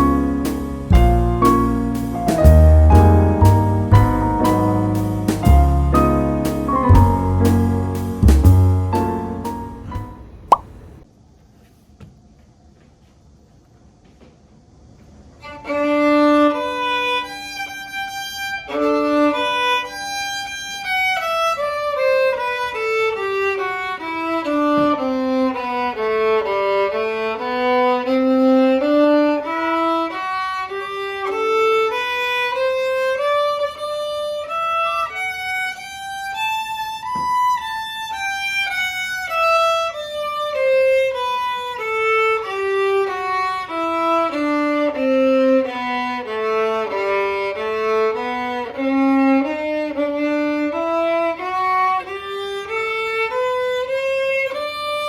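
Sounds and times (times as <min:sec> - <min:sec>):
solo violin playing runs: 0:15.4 - 0:55.0.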